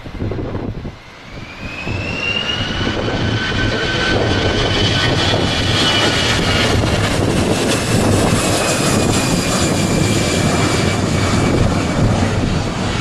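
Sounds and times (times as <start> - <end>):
faint engine whine: 0.0 - 13.0
jet engines roaring: 0.0 - 13.0.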